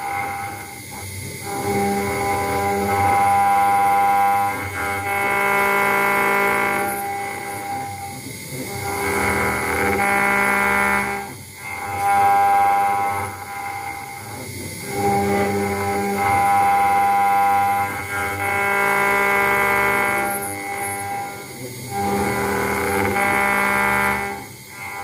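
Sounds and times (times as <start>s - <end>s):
engraving router whining: 0.0s - 25.0s.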